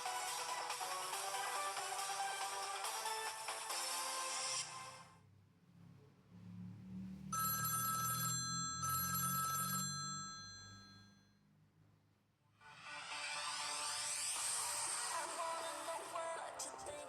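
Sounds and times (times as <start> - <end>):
phone ringtone telephone bell: 7.4 - 11.3.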